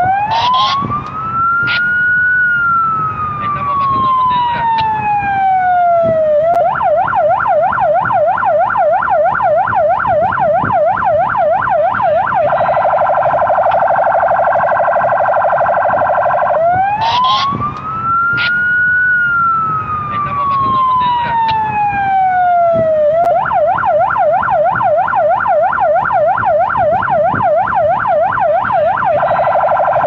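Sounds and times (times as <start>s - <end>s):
police siren wailing and yelping: 0.0s - 30.0s.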